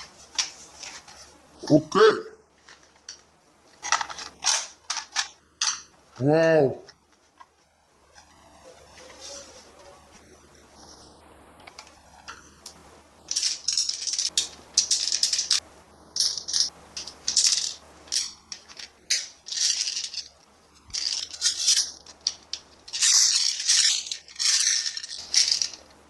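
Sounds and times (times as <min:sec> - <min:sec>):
plastic toys rattling: 0:03.8 - 0:05.9, 0:13.3 - 0:15.6, 0:16.2 - 0:26.0.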